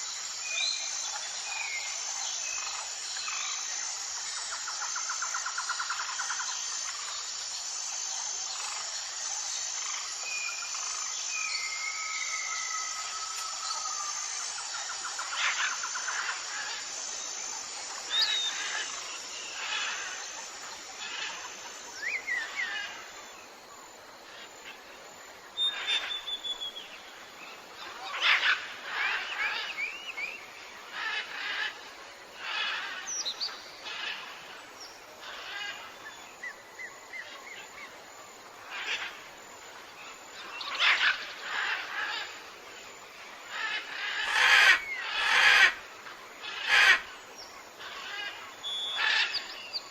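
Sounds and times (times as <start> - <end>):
steady background hiss: 0.0 - 49.9
birds chirping and chattering: 40.4 - 42.5.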